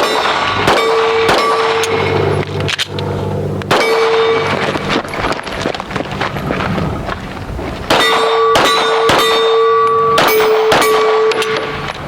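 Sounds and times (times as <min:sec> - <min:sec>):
steel target ringing: 0:00.0 - 0:02.4, 0:03.0 - 0:05.2, 0:07.9 - 0:11.9
pistol shots: 0:00.0 - 0:02.8, 0:03.7 - 0:05.7, 0:07.9 - 0:12.0.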